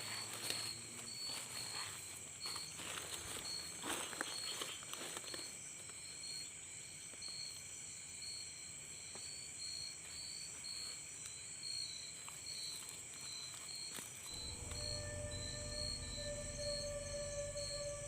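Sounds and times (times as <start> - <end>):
insect chorus: 0.0 - 18.0
high pulsing insect chirp: 9.6 - 18.0.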